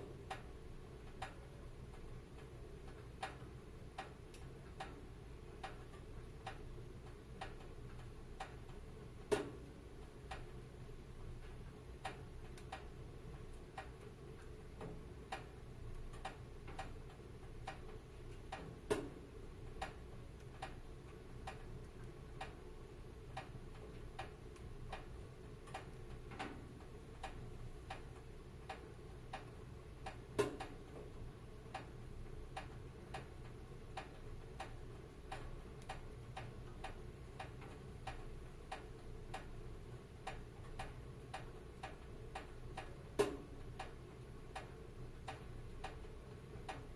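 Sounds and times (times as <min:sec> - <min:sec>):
low steady hiss: 0:00.0 - 0:46.9.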